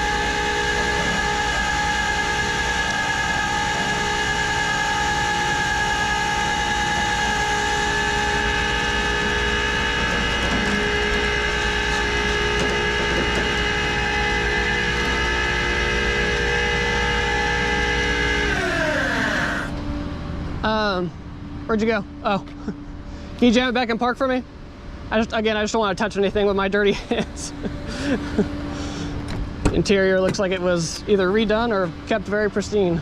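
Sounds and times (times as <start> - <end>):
winch motor whining: 0.0 - 19.8.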